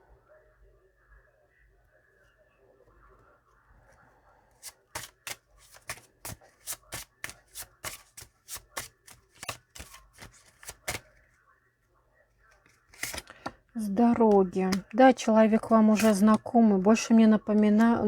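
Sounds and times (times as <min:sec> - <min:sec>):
cards rustling: 0:04.5 - 0:11.2, 0:12.5 - 0:16.5
cards slapping together: 0:04.6 - 0:11.1, 0:12.8 - 0:15.0, 0:15.9 - 0:16.4.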